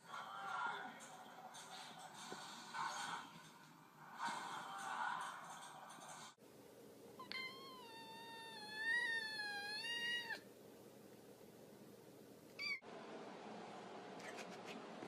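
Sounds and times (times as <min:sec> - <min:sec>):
cat meowing: 0:07.2 - 0:10.4.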